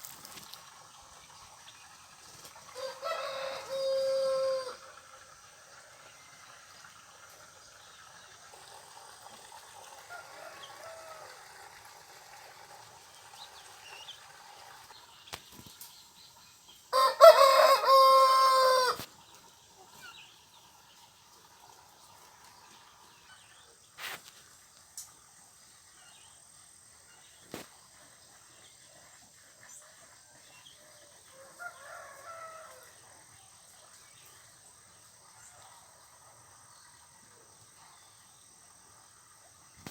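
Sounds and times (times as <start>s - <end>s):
rooster crowing: 2.8s - 5.0s, 10.1s - 11.4s, 16.9s - 19.0s, 31.3s - 33.0s.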